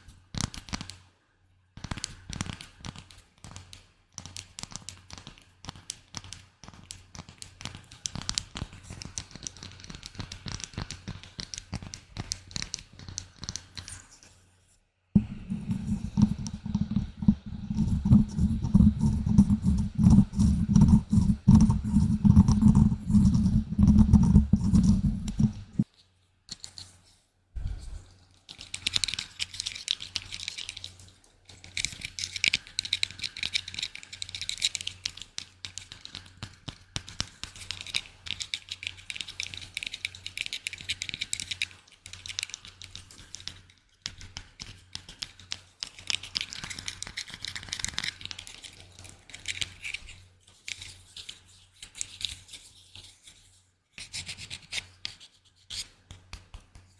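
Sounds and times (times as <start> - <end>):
crackly scratching and clicking: 0.0 - 1.1, 1.8 - 56.9
rapid low thudding taps: 15.2 - 25.8.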